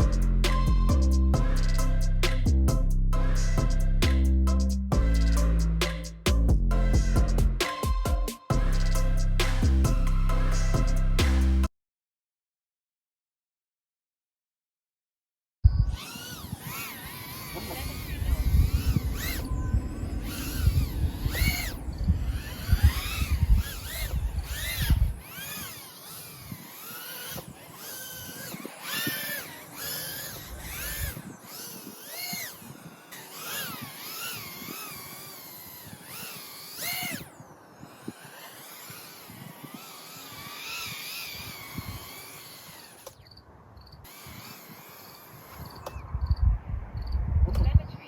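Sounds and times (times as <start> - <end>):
low rumble: 0.0 - 7.6
drone motors whining: 0.0 - 11.7, 15.7 - 46.4.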